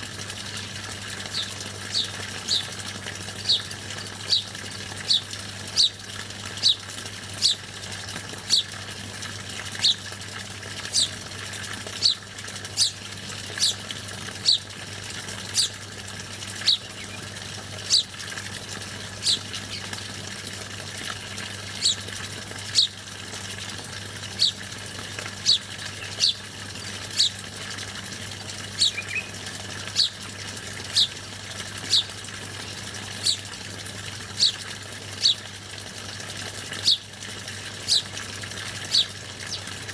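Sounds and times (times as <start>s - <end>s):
songbird chirping: 4.3s - 4.5s, 16.6s - 17.3s, 21.8s - 22.0s, 28.8s - 30.2s.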